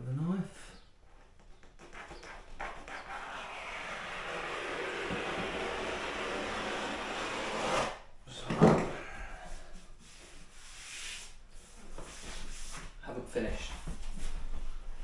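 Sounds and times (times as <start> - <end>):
faint rubbing: 1.8 - 15.0
scraping against thermal liner: 3.0 - 8.0.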